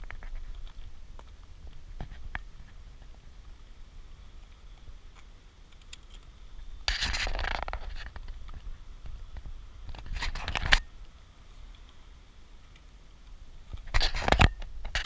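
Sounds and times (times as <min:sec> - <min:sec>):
scraping and rubbing: 0:06.8 - 0:08.7, 0:09.9 - 0:10.8, 0:13.8 - 0:15.0.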